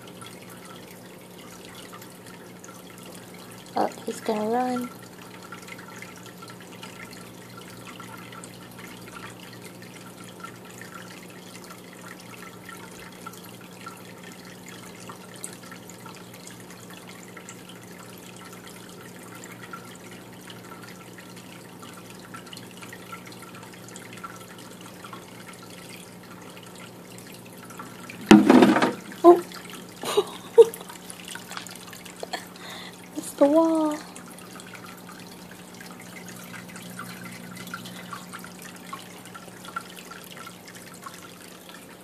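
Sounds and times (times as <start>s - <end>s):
water trickling and dripping: 0.0s - 42.0s
filter hum: 23.2s - 42.0s.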